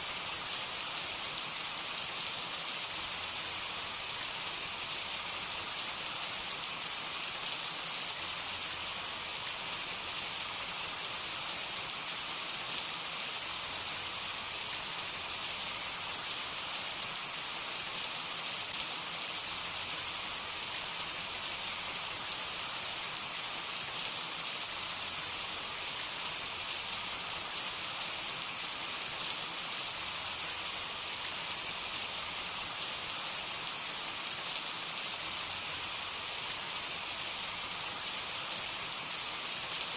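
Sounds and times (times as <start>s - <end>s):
food sizzling in hot oil: 0.0s - 39.9s.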